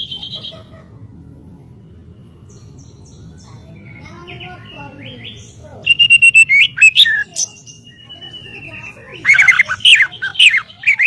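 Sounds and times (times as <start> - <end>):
bird singing chirps and whistles: 3.8 - 11.0.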